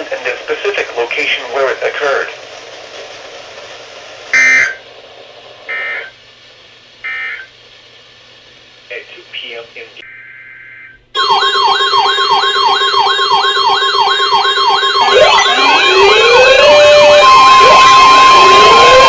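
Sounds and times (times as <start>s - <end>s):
siren cycling rapidly: 4.4s - 4.8s, 5.7s - 6.1s, 7.0s - 7.5s, 10.1s - 19.0s
steady high tone: 4.4s - 4.8s, 11.2s - 19.0s
steady siren tone: 4.4s - 4.8s, 5.7s - 6.1s, 10.2s - 19.0s
rising wail siren sweeps: 11.2s - 19.0s.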